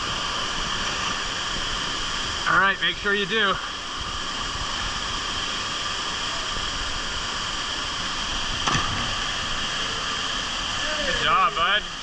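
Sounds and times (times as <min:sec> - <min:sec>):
waterfall rushing: 0:00.0 - 0:12.0
splash of person landing in water: 0:08.6 - 0:09.2.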